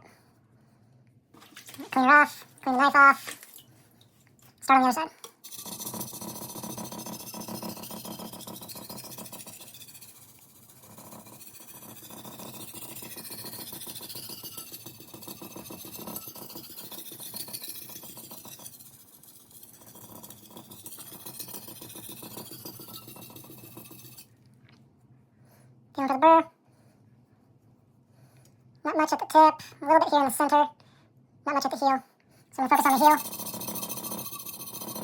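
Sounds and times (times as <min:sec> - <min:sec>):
knife scraping on whetstone: 0:05.4 - 0:24.3, 0:32.8 - 0:35.0.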